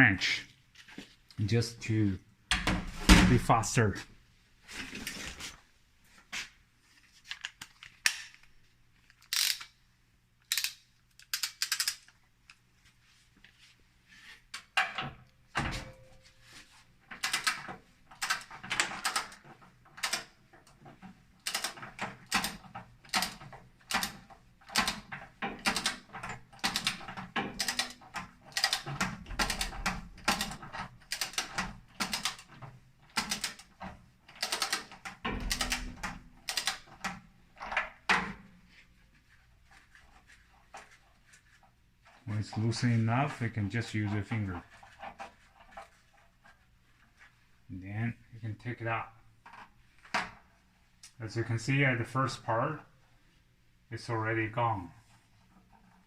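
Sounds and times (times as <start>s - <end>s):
ratchet wrench clicking: 9.2s - 9.7s, 10.5s - 12.2s.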